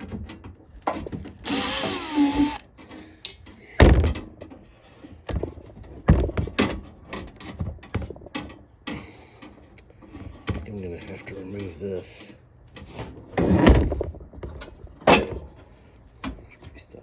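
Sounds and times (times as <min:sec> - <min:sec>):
knocks and clunks of handling: 0:00.0 - 0:01.4, 0:02.7 - 0:11.8, 0:12.6 - 0:16.8
power screwdriver running: 0:01.4 - 0:02.6.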